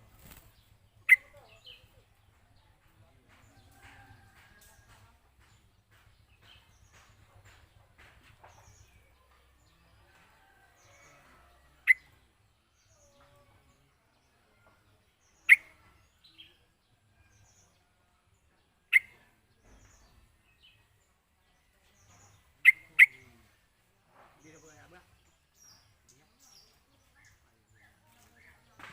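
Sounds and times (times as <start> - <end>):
sharp bird calls: 0.0 - 2.0, 15.3 - 16.6, 18.9 - 19.3, 22.0 - 23.5
bird chirps: 0.1 - 2.3, 11.8 - 13.4, 15.2 - 17.8, 18.8 - 23.6.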